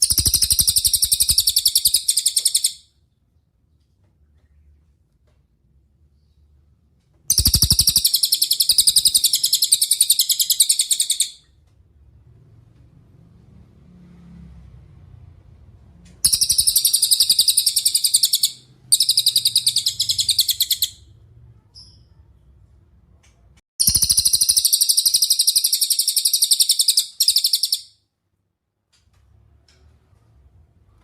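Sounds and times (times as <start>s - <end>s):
songbird high-pitched trills: 0.0s - 2.8s, 7.3s - 11.4s, 16.3s - 21.0s, 23.8s - 27.9s.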